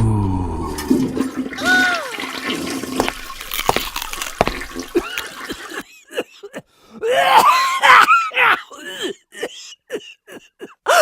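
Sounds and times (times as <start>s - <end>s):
rushing gurgling water: 0.7s - 5.8s.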